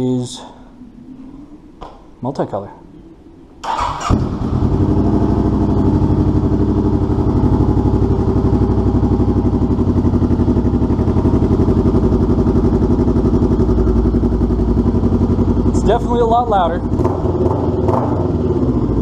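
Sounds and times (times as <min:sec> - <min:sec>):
motorcycle engine idling: 0:03.7 - 0:19.0.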